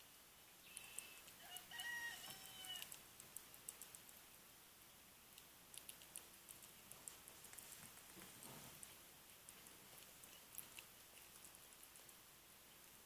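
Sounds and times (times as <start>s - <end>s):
baby squirrel squeaking: 0.6s - 3.0s.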